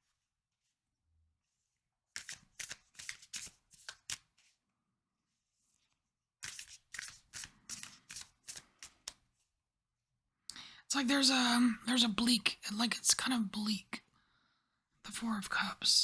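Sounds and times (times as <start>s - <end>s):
cards being shuffled: 2.2s - 4.4s, 6.4s - 9.2s.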